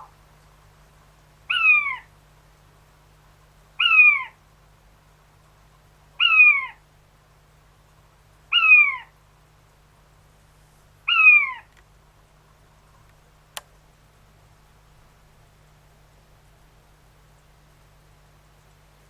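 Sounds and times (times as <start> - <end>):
quail whistled calls: 1.5 - 2.1, 3.8 - 4.3, 6.2 - 6.8, 8.5 - 9.1, 11.1 - 11.7.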